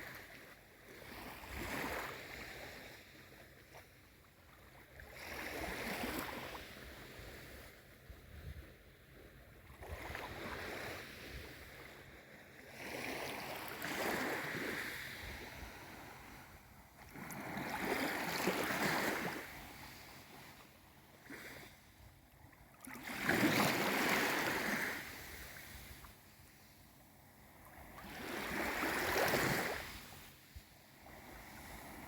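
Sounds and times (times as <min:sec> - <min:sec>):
small sea waves surging: 0:00.0 - 0:03.9, 0:04.5 - 0:07.9, 0:09.0 - 0:32.0.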